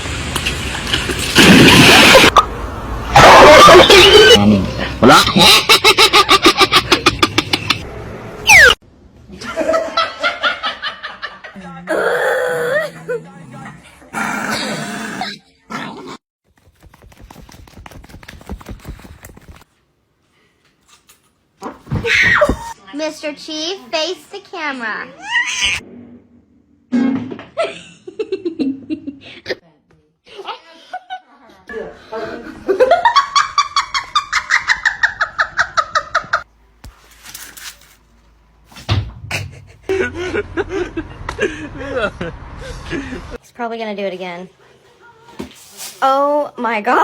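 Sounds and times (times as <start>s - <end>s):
quick taps and clicks: 16.5s - 19.6s.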